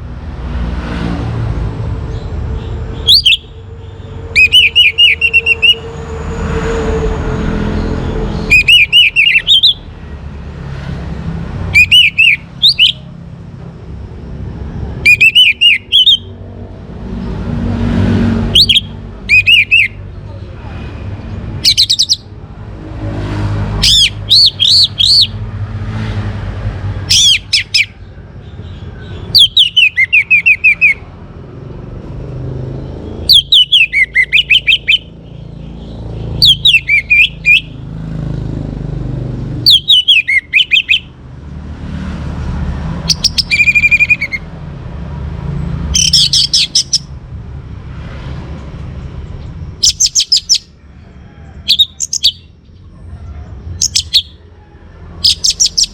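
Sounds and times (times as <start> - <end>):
thrush singing whistled notes: 2.1 - 9.9, 11.6 - 13.2, 15.0 - 16.4, 18.4 - 20.0, 21.6 - 22.4, 23.8 - 25.4, 27.1 - 31.1, 33.1 - 37.8, 39.6 - 41.2, 43.0 - 44.5, 45.9 - 47.2, 49.8 - 50.8, 51.6 - 52.6, 53.8 - 54.4, 55.2 - 55.9.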